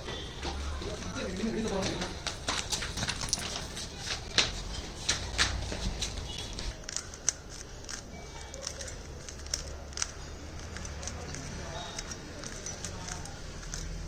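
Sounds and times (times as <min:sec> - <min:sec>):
plastic puzzle cube clicking: 0:06.7 - 0:14.0.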